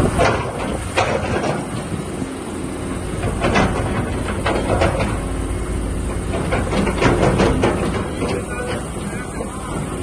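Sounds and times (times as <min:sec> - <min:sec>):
excavator diesel engine running: 0:00.0 - 0:10.0
sharp metallic knocks: 0:03.2 - 0:05.4, 0:06.1 - 0:09.0.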